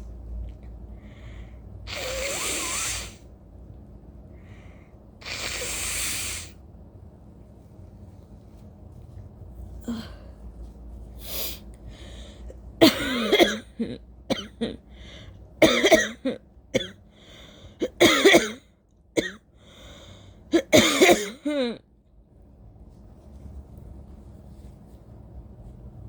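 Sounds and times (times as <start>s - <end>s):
woman coughing: 12.8s - 14.8s, 15.6s - 17.0s, 17.8s - 19.4s, 20.5s - 21.8s.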